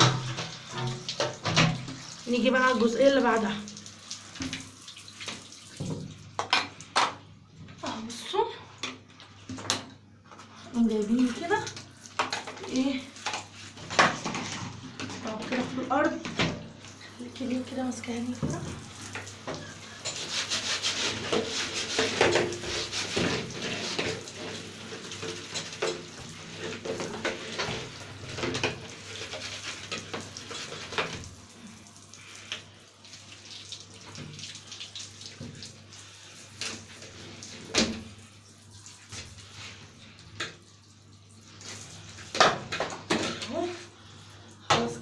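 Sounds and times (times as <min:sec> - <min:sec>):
tap water running and splashing: 0:00.0 - 0:45.0.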